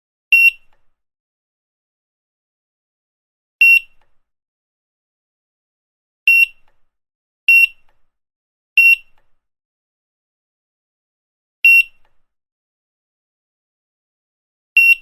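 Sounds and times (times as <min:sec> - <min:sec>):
barcode scanner beeps: 0:00.4 - 0:00.7, 0:03.6 - 0:04.0, 0:06.3 - 0:06.7, 0:07.5 - 0:07.9, 0:08.8 - 0:09.2, 0:11.7 - 0:12.1, 0:14.8 - 0:15.0.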